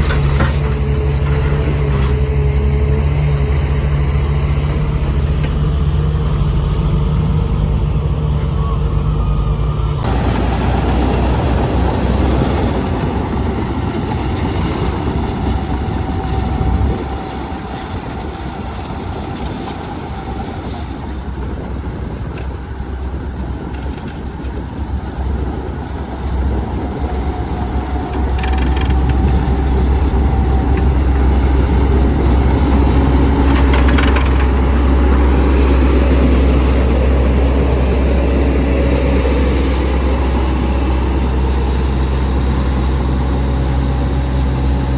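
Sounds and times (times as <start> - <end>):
construction machine engine humming: 0.0 - 44.9.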